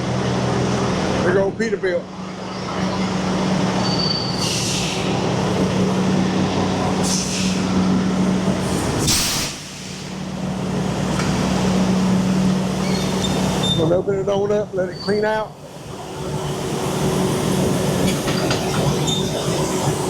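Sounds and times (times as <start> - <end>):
truck engine running: 0.0 - 9.1
air brake hisses: 4.3 - 5.2, 7.0 - 7.7, 8.6 - 10.2.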